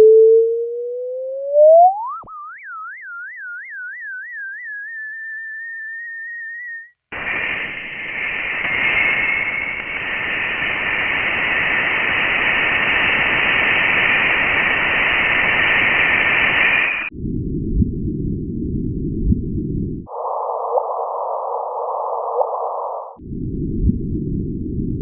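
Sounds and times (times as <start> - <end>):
steady whistling tone: 0.0 - 17.1
loud static-like hiss: 7.1 - 17.1.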